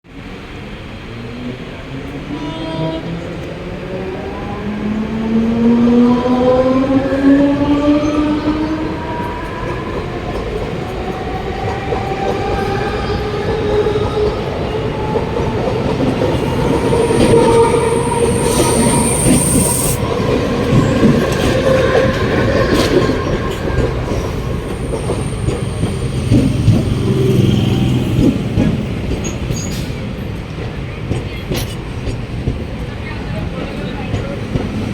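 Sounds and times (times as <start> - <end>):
wheels rumbling on rails: 3.4 - 34.9
high wheel squeal: 15.4 - 27.0
electric traction motors whining: 15.7 - 26.2.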